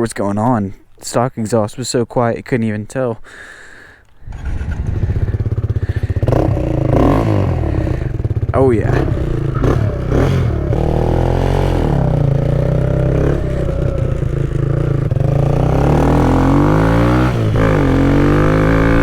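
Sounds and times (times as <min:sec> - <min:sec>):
motorcycle engine accelerating: 0:04.2 - 0:19.0.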